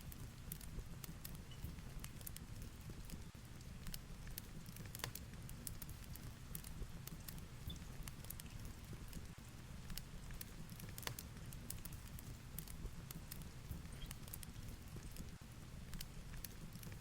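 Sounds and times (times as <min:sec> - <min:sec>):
fireplace crackling: 0:00.0 - 0:17.0.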